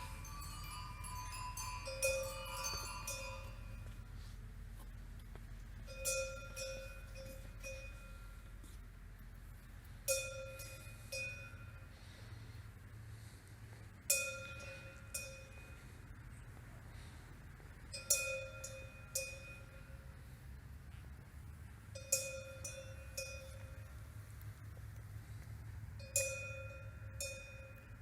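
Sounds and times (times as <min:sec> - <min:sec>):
bell-like chime strikes: 0:00.0 - 0:03.9
steady low hum: 0:00.0 - 0:28.0.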